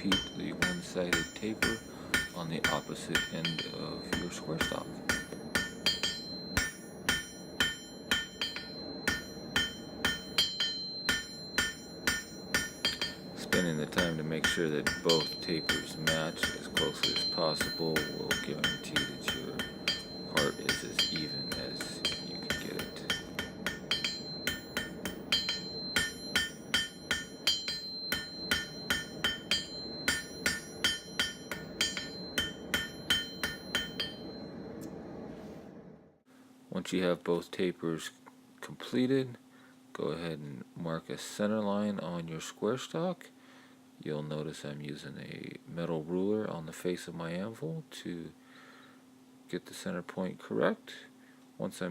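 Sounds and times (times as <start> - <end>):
hammer ringing on anvil: 0.0 - 34.7.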